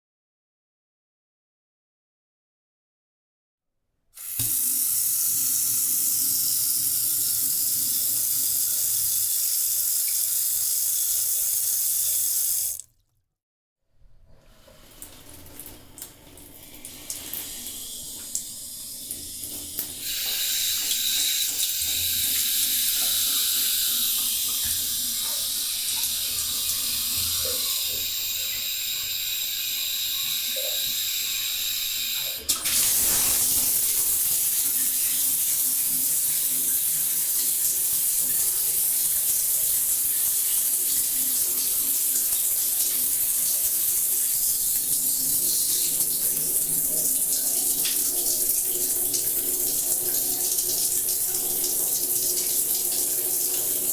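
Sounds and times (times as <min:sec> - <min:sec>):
water running from a tap: 0:04.2 - 0:12.9, 0:14.5 - 0:53.9
hissy water spray: 0:20.0 - 0:35.5.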